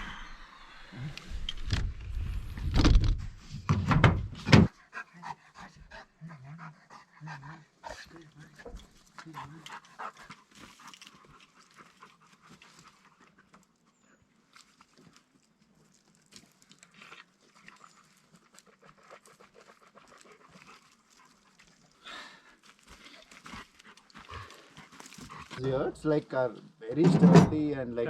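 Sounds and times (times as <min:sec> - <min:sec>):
dog panting: 0:04.7 - 0:13.5, 0:17.6 - 0:22.0, 0:23.2 - 0:25.9.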